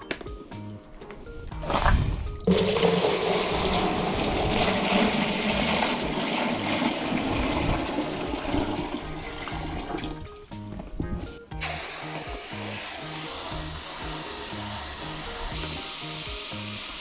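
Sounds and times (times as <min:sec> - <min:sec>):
rushing churning water: 0:02.5 - 0:10.2.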